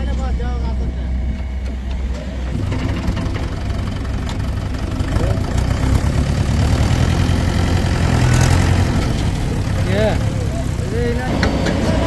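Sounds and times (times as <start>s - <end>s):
diesel engine idling: 0.0s - 12.0s.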